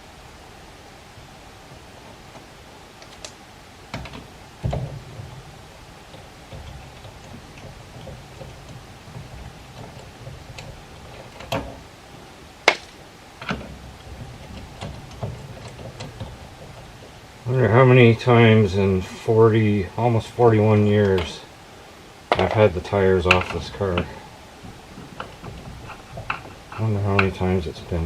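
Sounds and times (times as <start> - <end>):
hand tools knocking on metal: 3.9 - 11.8, 22.3 - 28.0.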